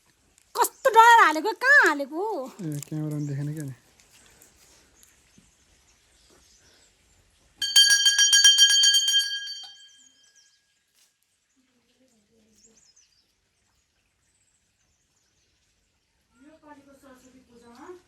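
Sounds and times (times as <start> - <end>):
small bell rung rapidly: 7.6 - 10.5.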